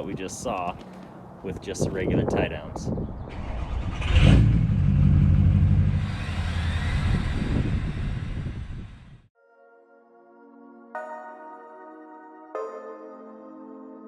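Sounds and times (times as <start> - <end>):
road and wind noise: 0.0 - 9.3
vehicle engine under load: 3.3 - 9.3
soft ambient music: 9.4 - 14.0.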